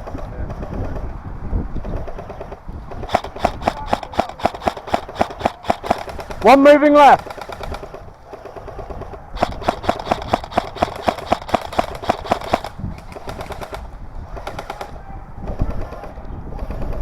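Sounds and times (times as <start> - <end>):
airsoft gun firing bursts: 3.0 - 15.0.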